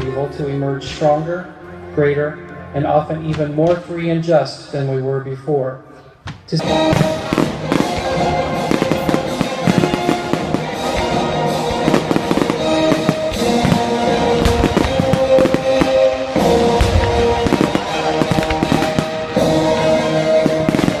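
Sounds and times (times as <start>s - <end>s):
fireworks bangs and crackles: 6.4s - 21.0s
music with held chords: 6.9s - 21.0s.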